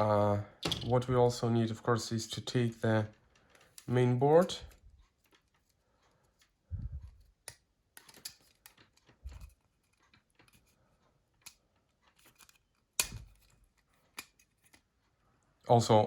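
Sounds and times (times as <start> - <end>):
hand tools clicking and scraping: 2.4 - 6.6, 7.2 - 14.9.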